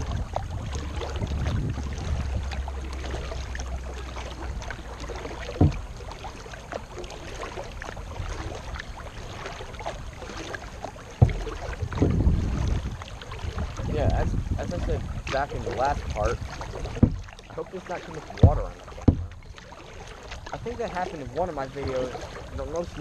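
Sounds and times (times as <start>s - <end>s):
wind rumbling on microphone: 0.0s - 6.0s, 11.2s - 19.5s
paddle splashes and drips: 0.0s - 23.0s
sharp knocks: 5.5s - 5.8s, 11.2s - 12.3s, 16.9s - 17.3s, 18.4s - 19.4s.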